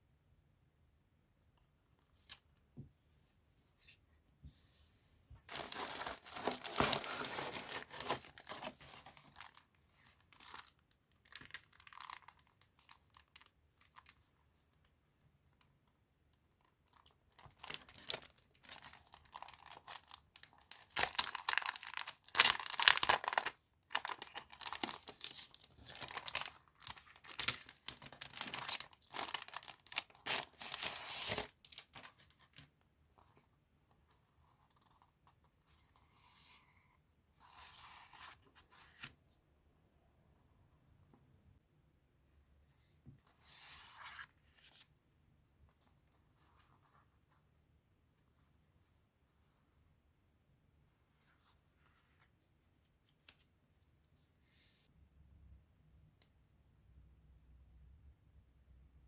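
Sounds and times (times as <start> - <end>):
paper crinkling and tearing: 5.5 - 9.7, 17.0 - 32.3.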